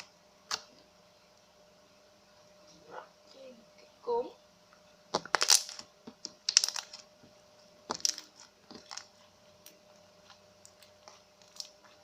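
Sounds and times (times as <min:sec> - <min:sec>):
slime with crunchy beads crackling: 0:05.1 - 0:07.1, 0:07.9 - 0:12.0.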